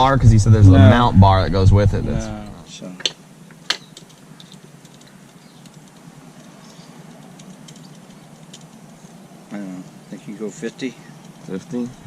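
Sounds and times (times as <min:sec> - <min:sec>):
low steady background hum: 0:00.0 - 0:12.0
clicks of objects being handled: 0:03.0 - 0:09.0.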